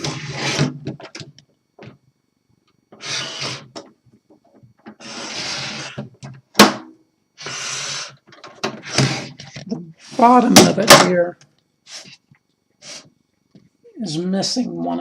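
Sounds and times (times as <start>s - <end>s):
case scraping against a surface: 0.0s - 0.9s.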